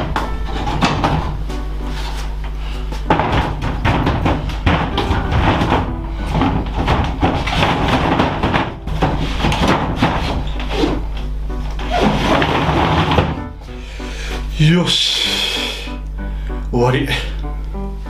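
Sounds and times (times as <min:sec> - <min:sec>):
background music with held tones: 0:00.0 - 0:18.0
short knocks and clunks: 0:03.0 - 0:11.0.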